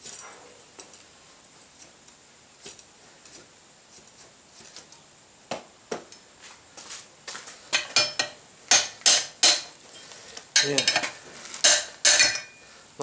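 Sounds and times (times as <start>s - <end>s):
sharp metal knocks: 7.8s - 9.7s, 10.6s - 12.6s.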